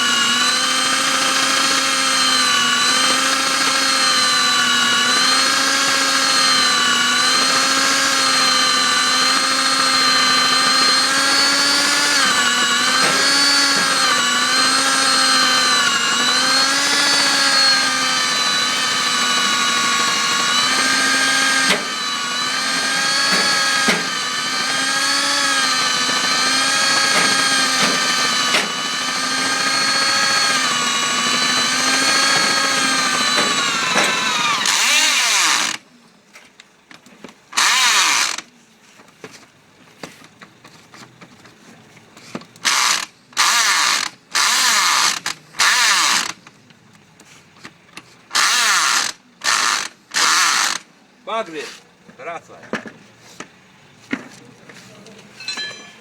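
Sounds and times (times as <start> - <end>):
vacuum cleaner running: 0.0 - 35.7
core drill motor whine: 0.0 - 35.9, 37.5 - 38.5, 42.6 - 46.4, 48.3 - 50.9.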